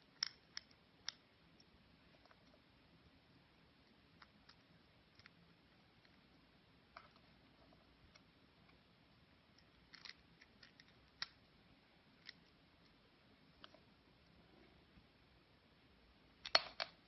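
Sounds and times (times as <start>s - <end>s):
small objects clicking and tapping: 0.1s - 2.6s, 3.8s - 5.4s, 9.5s - 11.4s, 12.2s - 13.0s, 16.4s - 17.0s.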